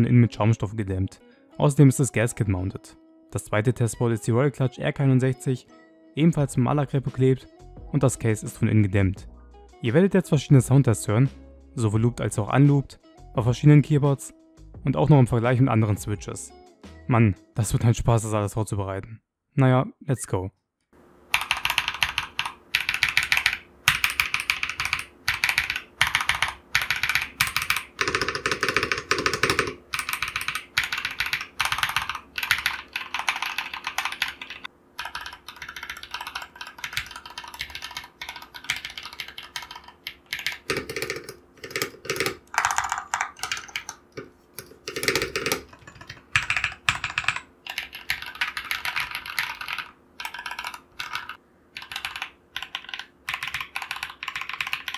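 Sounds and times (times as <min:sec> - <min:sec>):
mechanical keyboard typing: 0:21.3 - 0:54.9.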